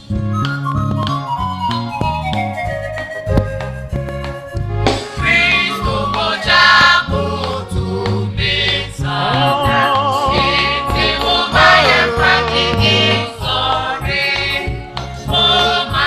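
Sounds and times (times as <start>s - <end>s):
steady bass beat: 0.1s - 16.0s
choir singing gospel: 5.1s - 16.0s.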